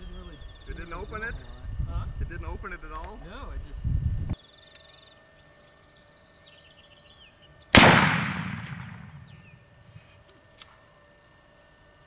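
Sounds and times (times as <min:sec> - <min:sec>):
faint chirping: 0:00.0 - 0:01.8, 0:08.8 - 0:10.2
rifle shot with rolling echo: 0:07.7 - 0:09.6.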